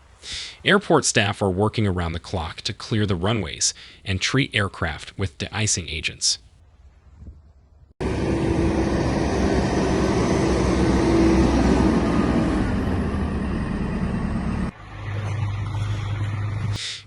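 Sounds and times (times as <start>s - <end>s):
loud vehicle engine running: 8.0s - 16.8s
low engine hum: 8.0s - 16.8s.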